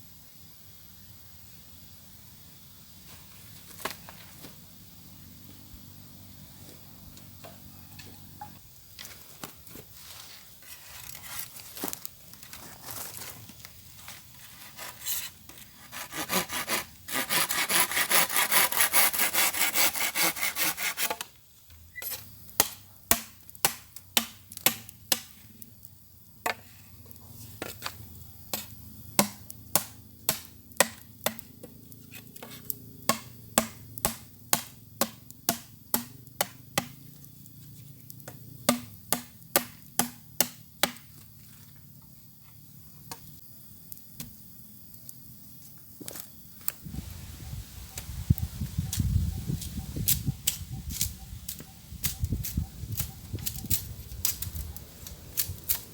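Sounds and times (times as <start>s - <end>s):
saw cutting bamboo: 14.3s - 21.3s
sharp chopping blows: 22.6s - 25.3s, 33.1s - 37.0s, 38.7s - 41.0s.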